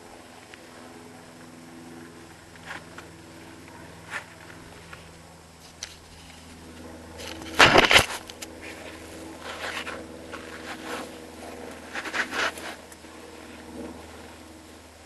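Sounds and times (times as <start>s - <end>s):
footsteps scraping and rustling: 2.5s - 14.8s.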